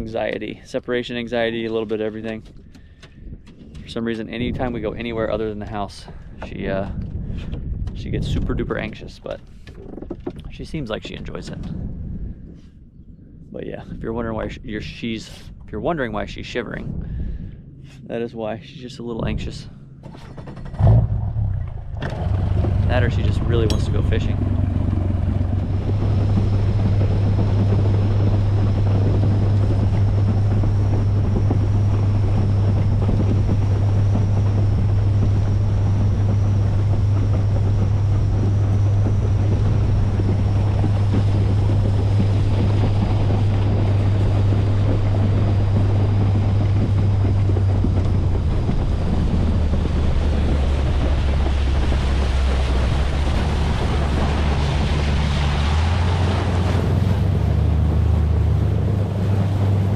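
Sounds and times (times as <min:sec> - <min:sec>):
motorboat engine running: 0:00.0 - 0:59.9
wind buffeting microphone: 0:00.0 - 0:59.9
water rushing past hull: 0:18.8 - 0:59.9.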